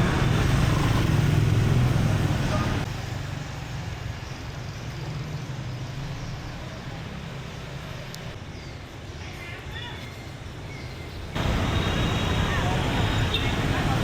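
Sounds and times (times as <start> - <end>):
vehicle engine passing: 0.0 - 3.4
street traffic hum: 0.0 - 14.0.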